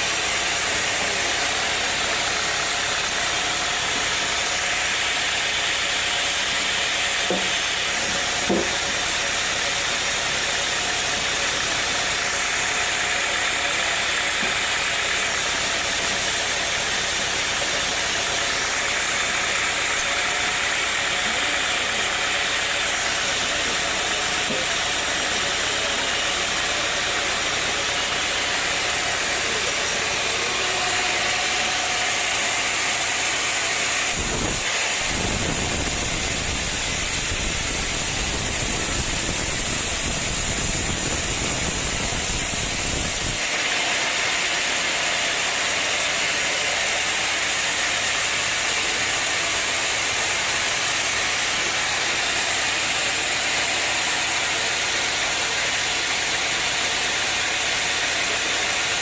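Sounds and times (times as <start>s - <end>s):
sawmill engine drone: 0.0s - 59.0s
loud even hiss: 18.4s - 44.2s.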